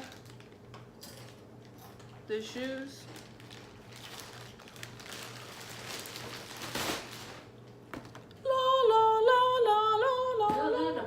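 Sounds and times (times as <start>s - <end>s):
rustling shoe packaging: 3.1s - 7.5s.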